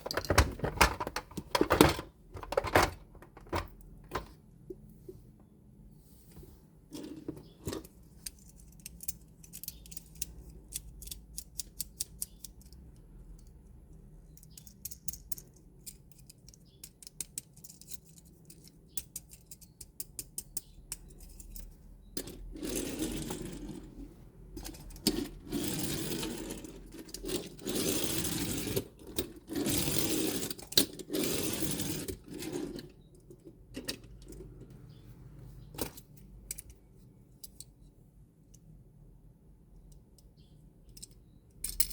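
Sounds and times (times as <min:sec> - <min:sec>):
toys clicking and tapping: 0:07.8 - 0:13.6, 0:14.3 - 0:22.5.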